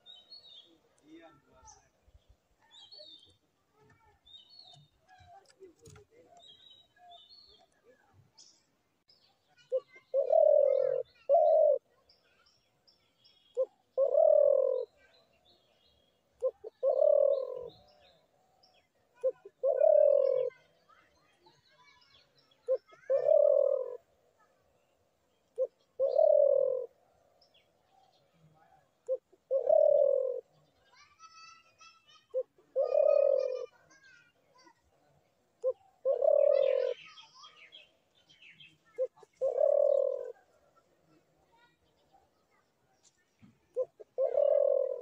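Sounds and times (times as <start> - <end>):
small birds chirping: 0.0 - 45.0
dove cooing: 9.7 - 12.0, 13.5 - 15.0, 16.4 - 18.0, 19.2 - 20.7, 22.6 - 24.1, 25.6 - 27.0, 28.6 - 30.5, 32.3 - 33.8, 35.6 - 37.2, 38.9 - 41.0, 43.7 - 45.0.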